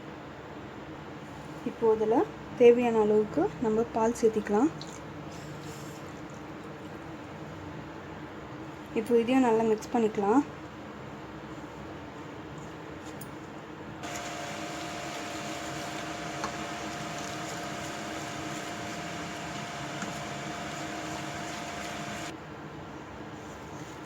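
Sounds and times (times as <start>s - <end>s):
electric hand mixer whining: 14.0s - 22.3s.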